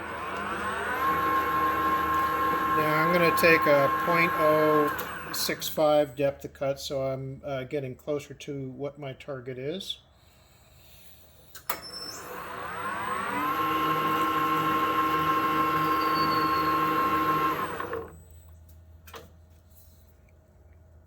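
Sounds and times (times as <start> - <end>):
lathe motor whining: 0.0 - 5.8, 12.0 - 18.2.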